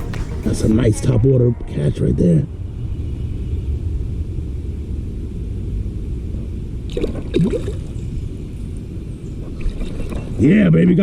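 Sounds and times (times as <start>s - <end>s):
underwater river rush and gurgling: 4.8s - 10.4s.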